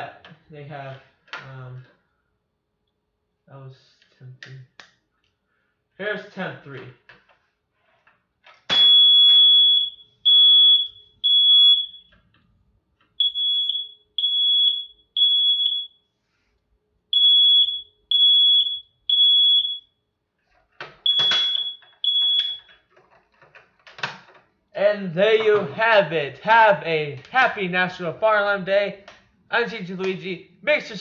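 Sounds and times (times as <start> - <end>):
fire alarm horn beeps: 8.7 - 12.2, 13.2 - 16.1, 17.1 - 20.0, 21.0 - 22.8.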